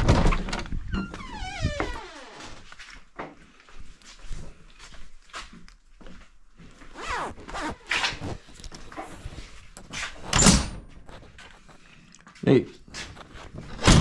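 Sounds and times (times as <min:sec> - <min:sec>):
clothing rustling and scraping: 0:06.0 - 0:14.0.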